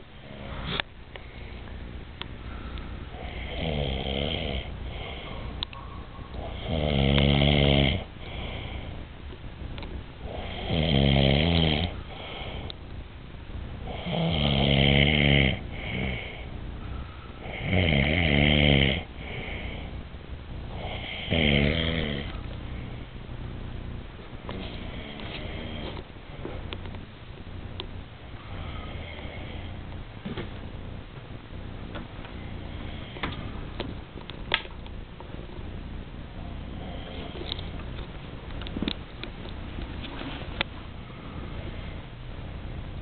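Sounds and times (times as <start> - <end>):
quiet breathing: 0.0 - 10.8, 11.8 - 14.3, 15.5 - 17.8, 18.9 - 26.9, 28.2 - 30.2, 32.3 - 33.8, 36.3 - 38.1, 40.0 - 43.0
man snoring: 3.1 - 5.4, 6.4 - 9.0, 10.2 - 12.7, 13.8 - 16.5, 17.4 - 20.0, 20.7 - 22.4, 24.8 - 26.0, 28.5 - 29.8, 36.7 - 37.4.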